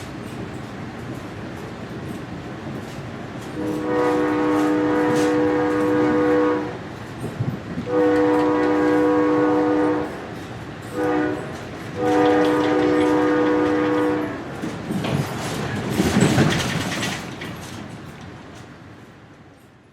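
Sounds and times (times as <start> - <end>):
train rumbling on rails: 0.0 - 19.9
train horn blasts: 3.5 - 6.9, 7.8 - 14.5.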